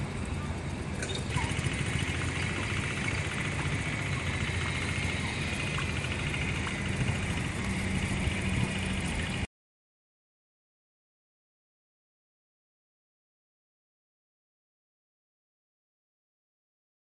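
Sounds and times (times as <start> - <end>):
vehicle engine running: 0.0 - 9.5.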